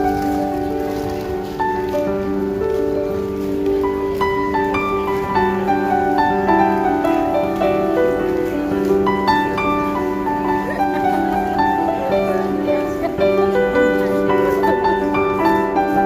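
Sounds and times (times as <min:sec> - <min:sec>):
piano melody over low chords: 0:00.0 - 0:16.0.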